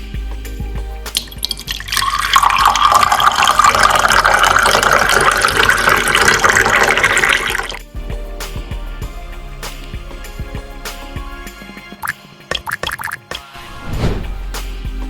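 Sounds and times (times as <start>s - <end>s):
liquid pouring into container: 1.2s - 7.8s, 12.0s - 13.4s.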